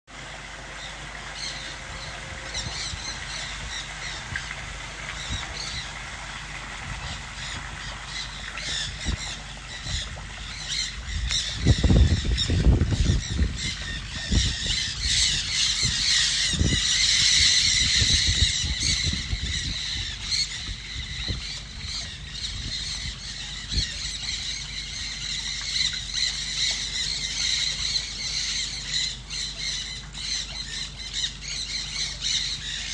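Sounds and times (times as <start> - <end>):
birds squawking and calling: 0.4 - 32.9
low thumps and rumble: 1.7 - 24.4.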